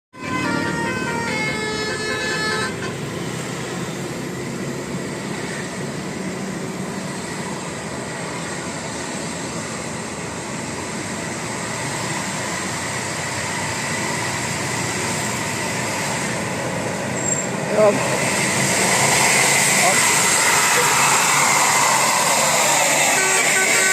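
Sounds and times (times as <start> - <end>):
multi-tone bus horn tune: 0.1 - 3.6, 22.7 - 23.9
road and engine noise: 0.1 - 23.9.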